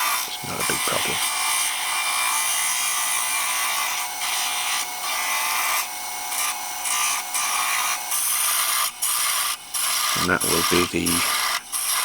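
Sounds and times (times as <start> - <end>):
gouge scraping wood on a lathe: 0.0 - 12.0.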